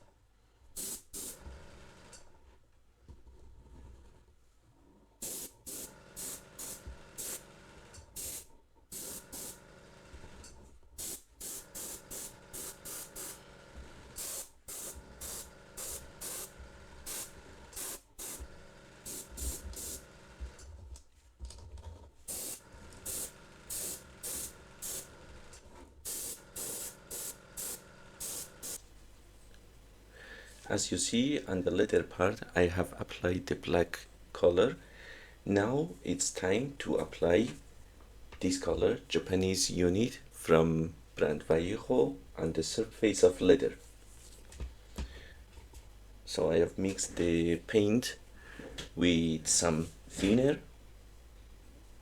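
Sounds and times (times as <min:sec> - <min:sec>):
airbrush hissing bursts: 0:00.8 - 0:01.4, 0:05.2 - 0:07.5, 0:08.1 - 0:09.6, 0:11.0 - 0:13.4, 0:14.2 - 0:20.1, 0:22.3 - 0:25.1, 0:26.0 - 0:28.8.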